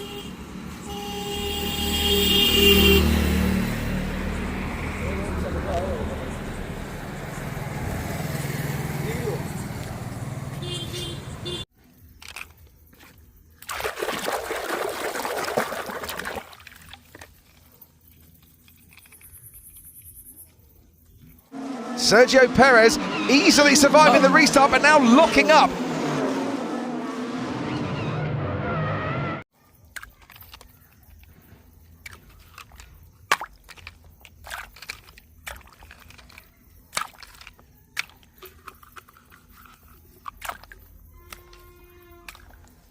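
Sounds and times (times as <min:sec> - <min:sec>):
plastic toys clicking and knocking: 0:12.1 - 0:12.7, 0:18.4 - 0:19.8, 0:29.8 - 0:41.6
water pouring: 0:13.6 - 0:17.7.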